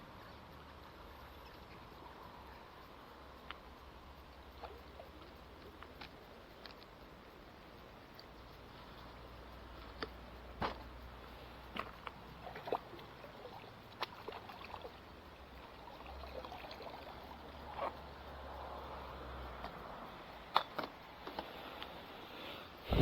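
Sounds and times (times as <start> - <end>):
faint trickling water: 0.0 - 23.0
low steady hum: 22.1 - 23.0.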